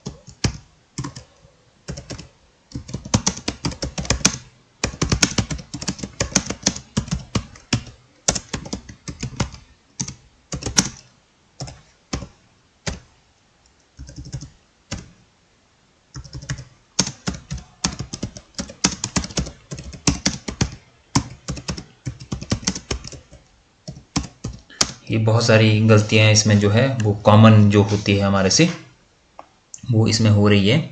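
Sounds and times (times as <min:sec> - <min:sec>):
laptop keyboard typing: 0:00.0 - 0:13.1, 0:13.7 - 0:15.2, 0:16.1 - 0:25.0.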